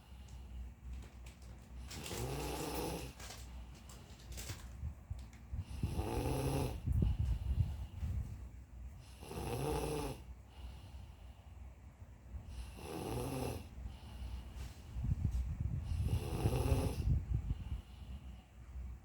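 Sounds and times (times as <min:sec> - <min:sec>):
person snoring: 0:05.7 - 0:07.1, 0:09.1 - 0:10.2, 0:12.6 - 0:13.7, 0:15.9 - 0:17.2.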